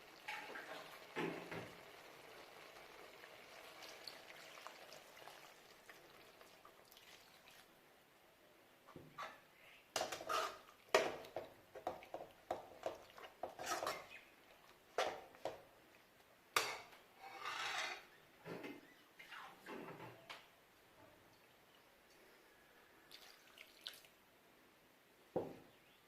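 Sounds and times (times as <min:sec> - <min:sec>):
utensil scraping and knocking a pot: 0:10.0 - 0:14.2, 0:16.6 - 0:18.7.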